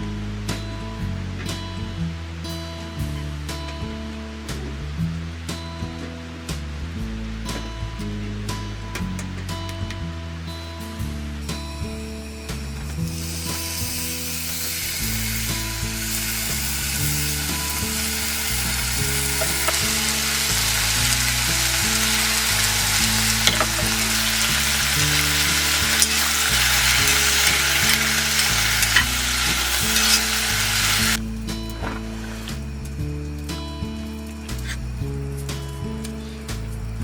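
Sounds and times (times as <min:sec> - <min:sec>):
food sizzling in a pan: 0:11.4 - 0:31.6.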